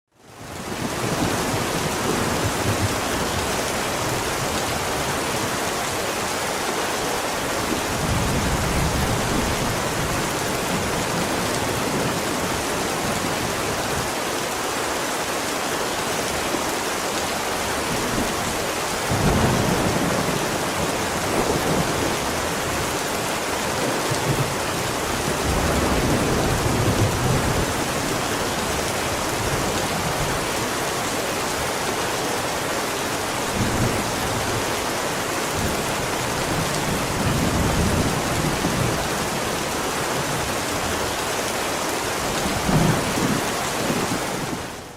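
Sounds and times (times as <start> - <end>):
heavy rain: 0.1 - 44.9
thunder rumbling: 23.8 - 30.4.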